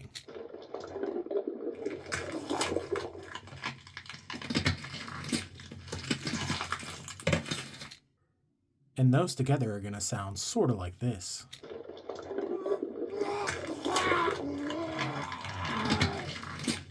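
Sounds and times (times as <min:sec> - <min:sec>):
bone cracking: 0:11.7 - 0:16.8.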